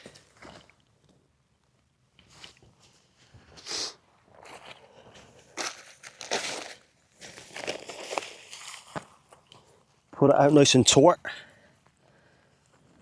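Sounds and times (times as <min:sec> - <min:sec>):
tarp fabric rustling and scraping: 0:03.6 - 0:09.3.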